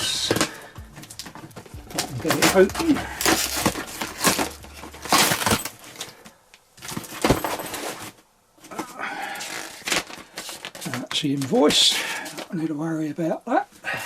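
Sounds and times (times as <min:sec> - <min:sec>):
paper rustling: 0:00.3 - 0:06.2
cardboard box being opened: 0:01.1 - 0:05.7.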